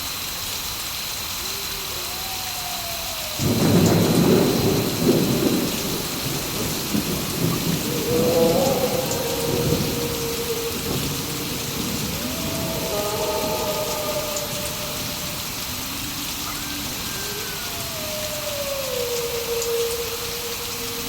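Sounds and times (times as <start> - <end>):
steady rain: 0.0 - 21.0
wolves howling: 1.4 - 21.0
thunder clap rolling: 3.0 - 21.0.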